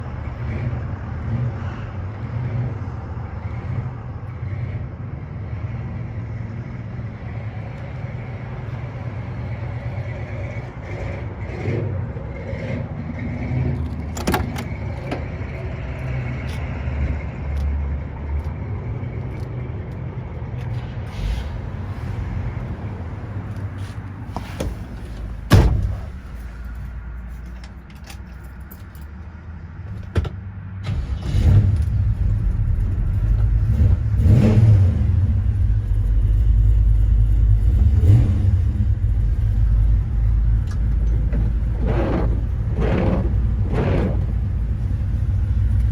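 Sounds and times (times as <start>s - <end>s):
car rumbling: 0.0s - 45.9s
loud thump: 25.5s - 26.2s.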